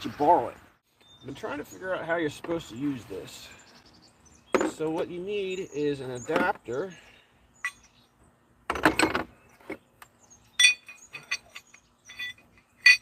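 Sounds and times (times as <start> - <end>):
metal parts clinking and rattling: 10.6 - 13.0.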